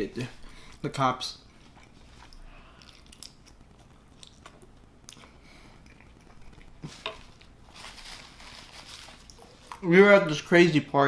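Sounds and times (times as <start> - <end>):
close chewing: 1.5 - 7.6
small crunches: 1.6 - 9.8.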